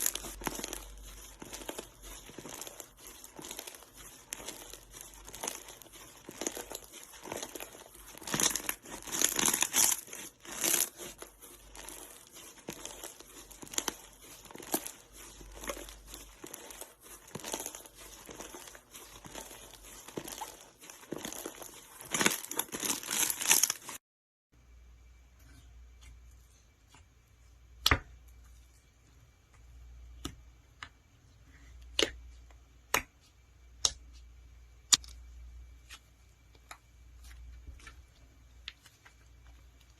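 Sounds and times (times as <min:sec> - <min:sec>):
slime crackling and crinkling: 0:00.0 - 0:24.0.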